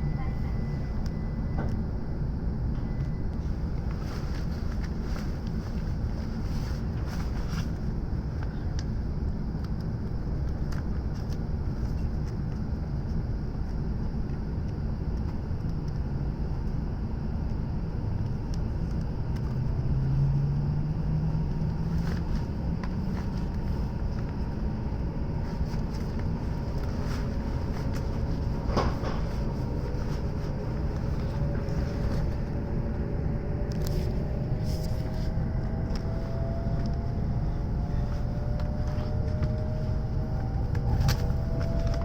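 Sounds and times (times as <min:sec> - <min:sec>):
low hum rising in pitch: 0:00.0 - 0:04.3, 0:17.8 - 0:42.0
train cabin rumble: 0:21.3 - 0:42.0.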